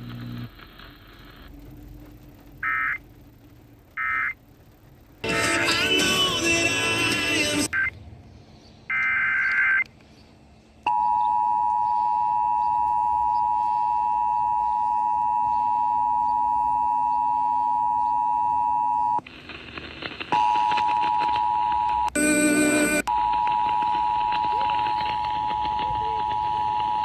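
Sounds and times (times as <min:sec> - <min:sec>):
radio static: 0:00.0 - 0:01.6, 0:02.5 - 0:03.0, 0:03.9 - 0:04.4, 0:05.2 - 0:07.9, 0:12.4 - 0:27.0
digital header tones: 0:04.0 - 0:04.4, 0:20.4 - 0:27.0.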